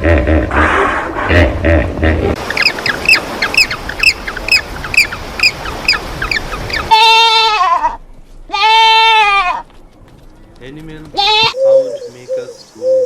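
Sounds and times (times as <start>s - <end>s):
bird calling high notes: 11.2s - 13.0s.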